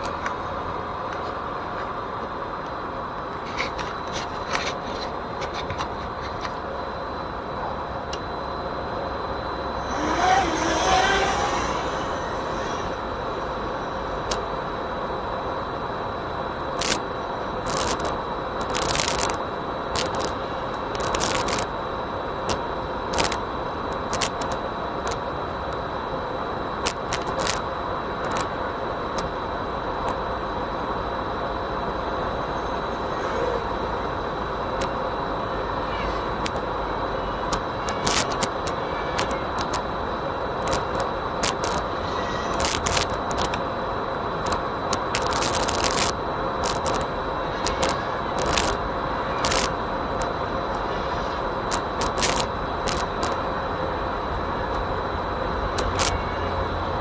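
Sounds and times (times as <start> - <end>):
whirring hum with high whine: 0.0 - 57.0
short clicks and crackles: 20.0 - 21.7, 24.0 - 25.2, 26.8 - 27.6, 40.6 - 41.8, 42.6 - 43.6, 44.4 - 48.8, 49.4 - 50.8, 51.7 - 53.4, 55.8 - 56.2.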